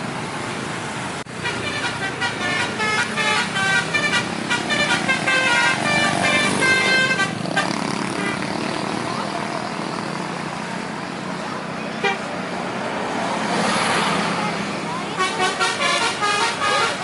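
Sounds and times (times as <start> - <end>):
traffic noise: 0.0 - 17.0
bus horn playing melody: 1.3 - 8.4, 12.0 - 12.3, 15.2 - 17.0.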